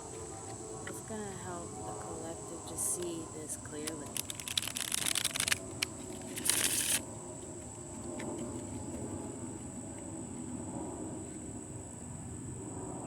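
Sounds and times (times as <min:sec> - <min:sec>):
cards being shuffled: 0:03.8 - 0:07.0
cards sliding: 0:03.8 - 0:07.0.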